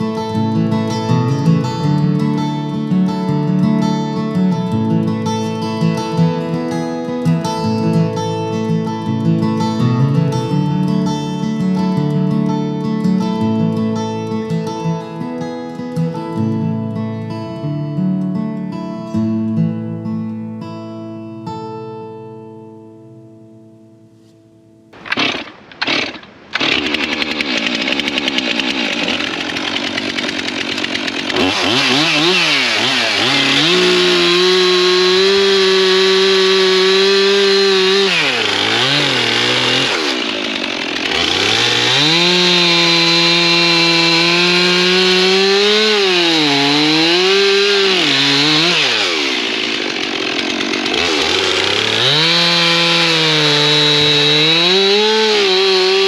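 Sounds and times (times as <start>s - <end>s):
chainsaw cutting wood: 0.0s - 4.7s, 25.0s - 56.0s.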